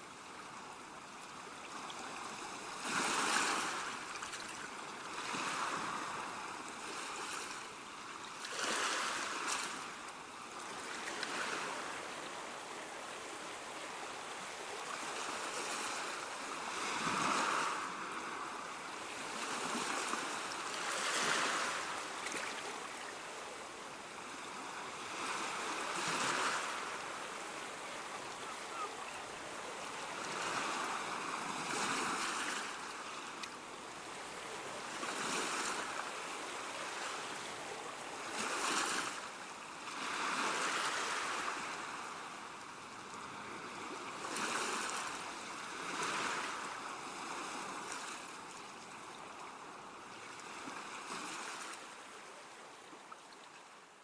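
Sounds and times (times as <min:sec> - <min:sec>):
ocean waves breaking: 0:02.0 - 0:07.6, 0:08.4 - 0:42.2.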